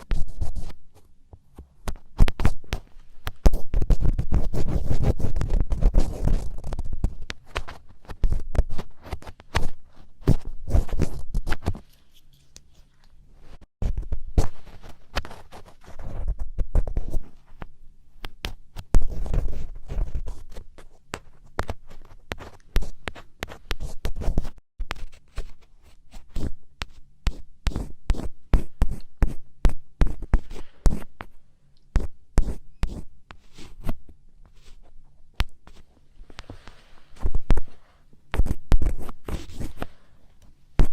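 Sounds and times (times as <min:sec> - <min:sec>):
ear pick scratching: 0:01.9 - 0:12.9.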